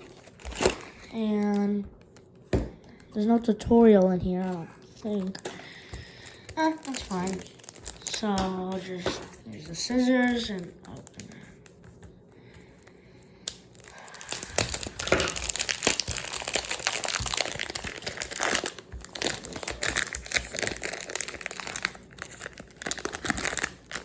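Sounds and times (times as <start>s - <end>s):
plastic packaging crinkling: 0.0s - 1.8s, 5.0s - 11.8s, 13.4s - 24.0s.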